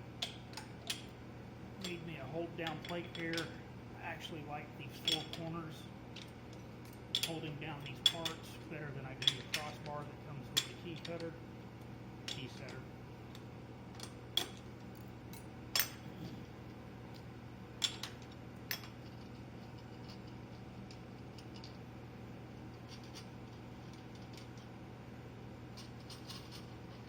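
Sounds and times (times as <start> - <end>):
metal parts clinking and knocking: 1.8 - 3.6, 7.1 - 8.5, 9.2 - 9.9, 25.8 - 27.0.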